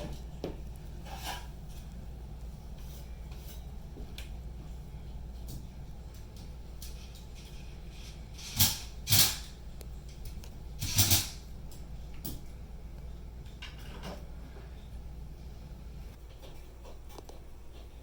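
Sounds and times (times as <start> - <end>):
scraping on drywall ceiling: 0.0 - 2.0
low steady hum: 0.0 - 18.0.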